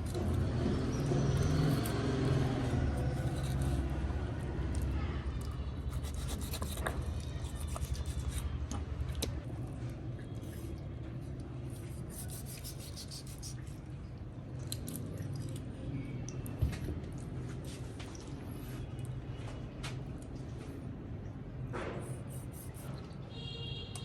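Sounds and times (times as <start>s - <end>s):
rubbing and scraping: 5.9s - 8.6s, 11.8s - 13.7s.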